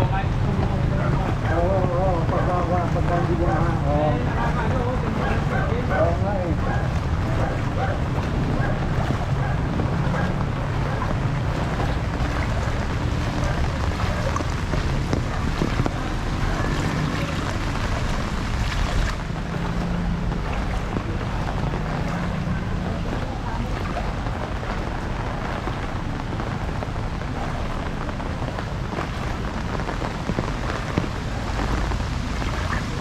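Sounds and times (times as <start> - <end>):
heavy rain and wind: 0.0 - 33.0
wind rumbling on microphone: 0.0 - 33.0.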